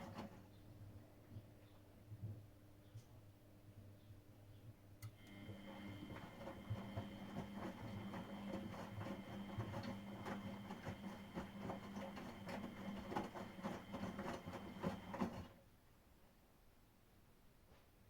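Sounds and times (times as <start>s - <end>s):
washing machine motor hum and whine: 5.1s - 15.6s.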